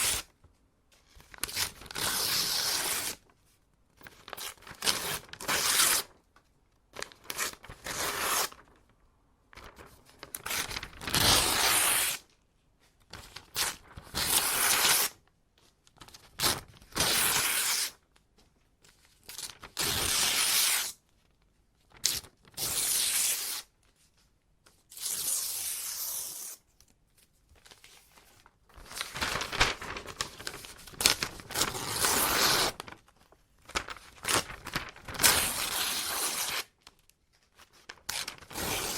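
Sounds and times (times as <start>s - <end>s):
paper ripping by hand: 0.0s - 0.2s, 1.4s - 3.2s, 4.4s - 6.1s, 7.2s - 8.6s, 9.7s - 12.2s, 13.6s - 15.2s, 16.4s - 17.9s, 19.5s - 21.0s, 22.0s - 23.7s, 28.8s - 32.9s, 33.8s - 36.7s, 38.0s - 38.9s.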